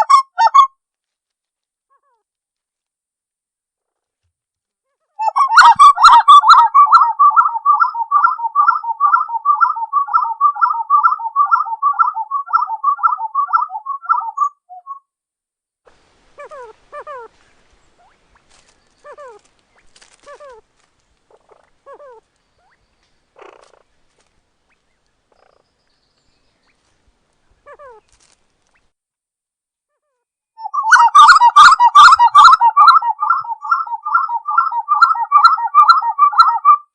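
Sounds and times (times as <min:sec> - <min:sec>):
wood-quail rolling song: 0:00.0 - 0:00.7, 0:05.2 - 0:15.0, 0:30.6 - 0:36.8
faint falling bird calls: 0:16.4 - 0:25.7.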